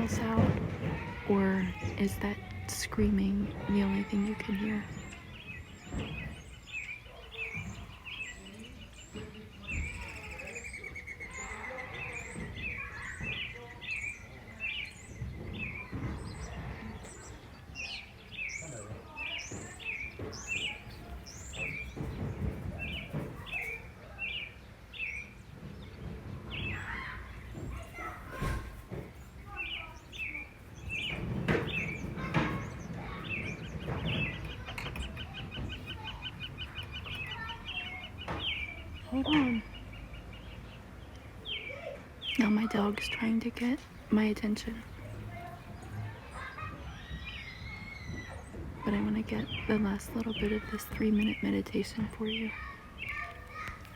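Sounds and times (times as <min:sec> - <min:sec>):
low uneven background noise: 0:00.0 - 0:53.9
songbirds chirping: 0:00.0 - 0:53.9.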